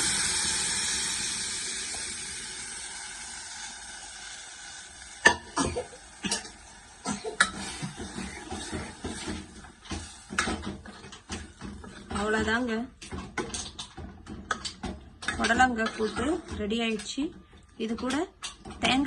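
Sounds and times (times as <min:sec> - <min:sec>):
food sizzling in hot oil: 0:00.0 - 0:12.5
spoon scraping a pan: 0:07.4 - 0:12.2, 0:15.2 - 0:17.1.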